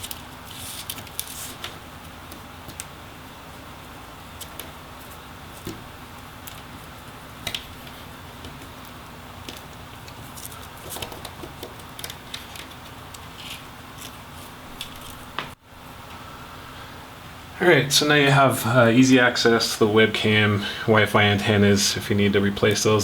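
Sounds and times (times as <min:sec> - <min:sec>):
steady low hum: 0:00.0 - 0:23.0
cable clicks and rustles: 0:06.4 - 0:15.6.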